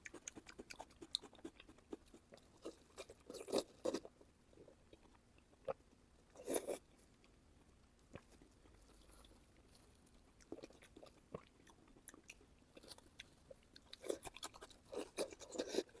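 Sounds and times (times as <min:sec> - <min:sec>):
chewing and biting: 0:00.0 - 0:04.1, 0:08.1 - 0:16.0.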